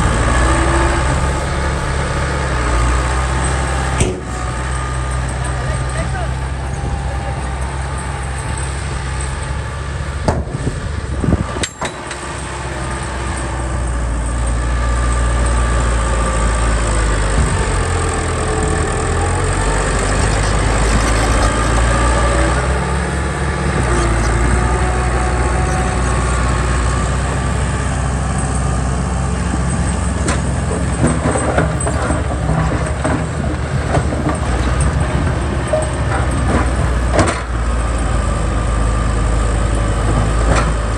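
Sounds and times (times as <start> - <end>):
heavy vehicle engine running: 0.0 - 40.9
metal clanks: 1.4 - 6.1.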